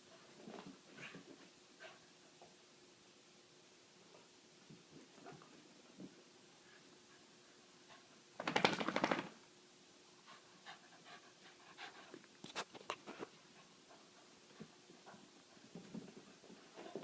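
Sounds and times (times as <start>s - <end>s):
dog panting: 10.2s - 12.3s.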